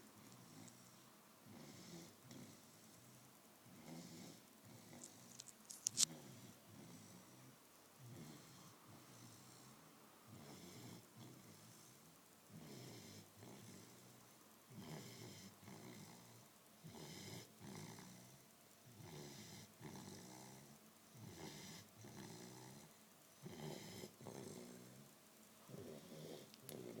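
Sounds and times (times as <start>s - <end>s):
dog snoring: 0.2s - 5.4s, 6.0s - 25.1s, 25.7s - 27.0s.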